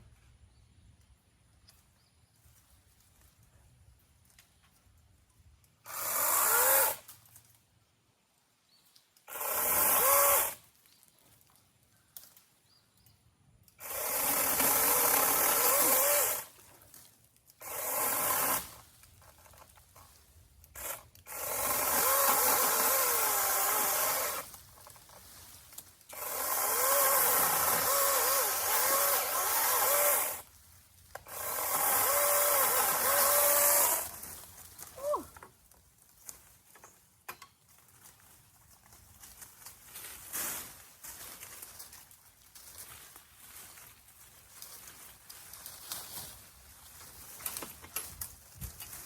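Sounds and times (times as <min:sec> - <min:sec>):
power saw cutting branches: 0:05.8 - 0:07.4, 0:09.2 - 0:10.7, 0:13.8 - 0:37.0, 0:37.8 - 0:49.0.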